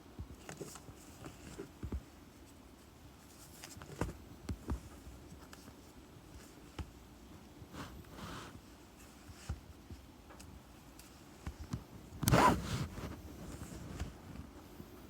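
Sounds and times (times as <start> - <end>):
soft handling taps and clicks: 0.2 - 2.5, 3.3 - 7.6, 9.0 - 12.4.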